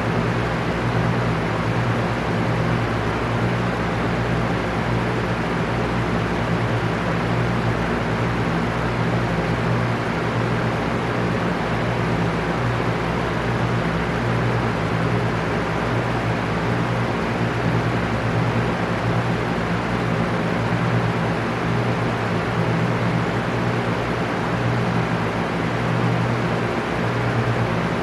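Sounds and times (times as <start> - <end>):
fan air rushing: 0.0 - 28.0.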